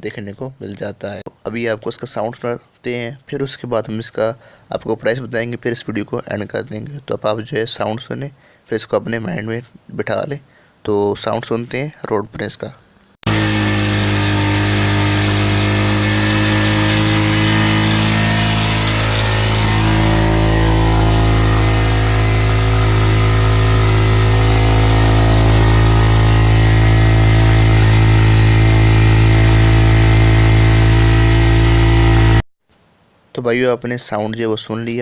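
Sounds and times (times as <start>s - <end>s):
motorcycle engine idling: 13.3s - 32.4s.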